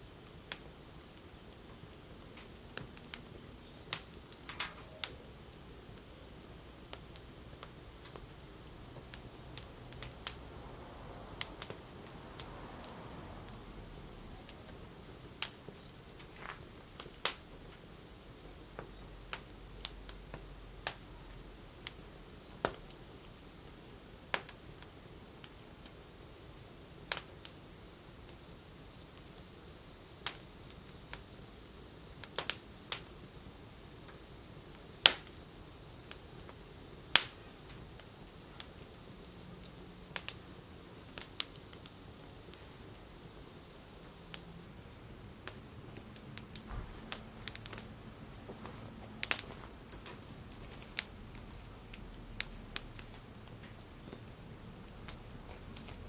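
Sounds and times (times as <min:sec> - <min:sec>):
wood fire crackling and popping: 0:00.0 - 0:56.0
high-pitched insect trill: 0:27.5 - 0:30.2, 0:47.8 - 0:56.0.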